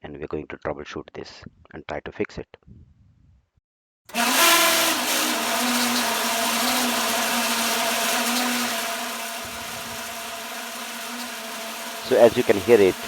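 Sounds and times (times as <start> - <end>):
fan running with metallic shriek: 4.1 - 13.0.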